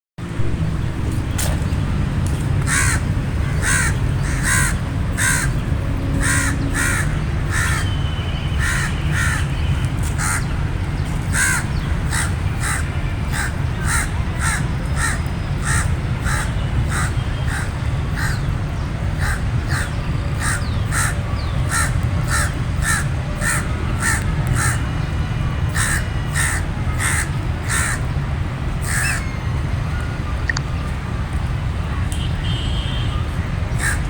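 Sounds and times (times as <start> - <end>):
steady low rumble: 0.2 - 8.1
crow cawing: 2.7 - 5.6, 6.2 - 7.9, 8.6 - 9.5, 10.2 - 10.5, 11.4 - 12.8, 13.4 - 18.4, 19.2 - 24.8, 25.7 - 28.0, 28.8 - 29.2, 33.8 - 34.0.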